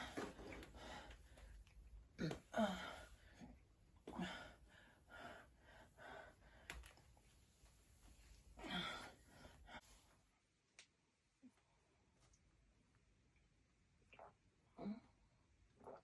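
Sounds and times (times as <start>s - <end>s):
person sighing and gasping: 2.2s - 3.4s, 8.6s - 9.5s.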